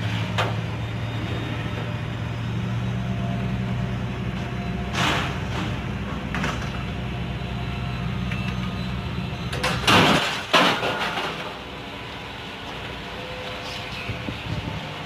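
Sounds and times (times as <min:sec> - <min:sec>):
vehicle engine running: 0:00.0 - 0:10.2.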